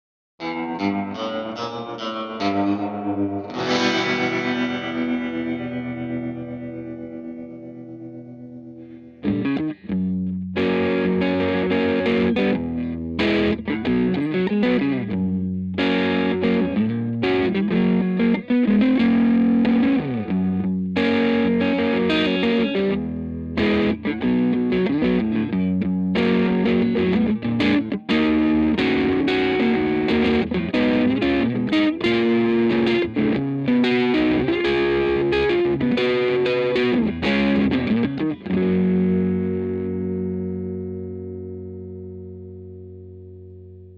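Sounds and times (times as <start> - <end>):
electric guitar through an amp: 0.4 - 43.9.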